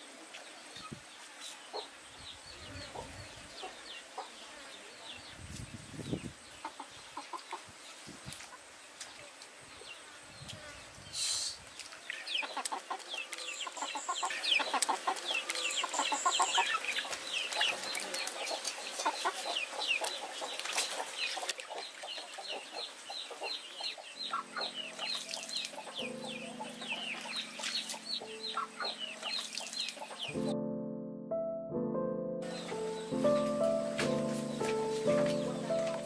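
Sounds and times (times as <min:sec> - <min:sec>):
chicks peeping: 0:12.3 - 0:30.6, 0:32.4 - 0:36.0
hen clucking: 0:12.4 - 0:30.4.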